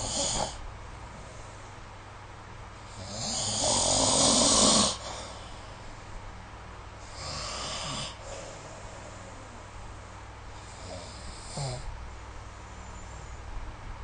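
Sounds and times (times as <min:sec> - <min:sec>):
person snoring: 0:00.0 - 0:00.6, 0:02.9 - 0:05.6, 0:07.0 - 0:09.6, 0:10.6 - 0:11.9.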